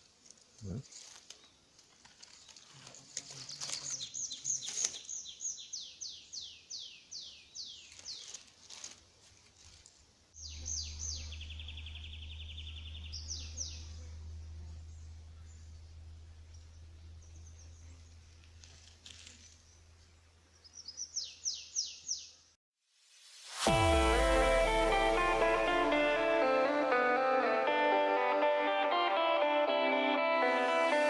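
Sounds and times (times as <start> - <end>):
songbird singing: 0.6 - 8.5, 10.4 - 22.5
low steady hum: 10.4 - 20.6.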